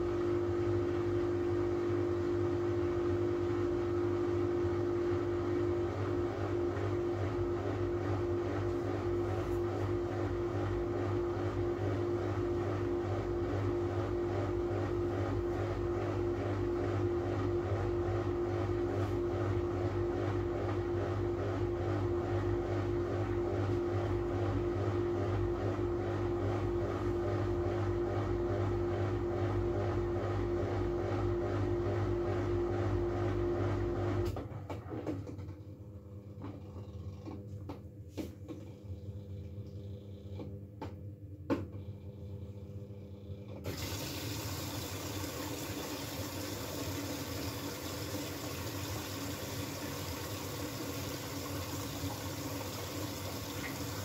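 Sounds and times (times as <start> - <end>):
washing machine spinning: 0.0 - 54.0.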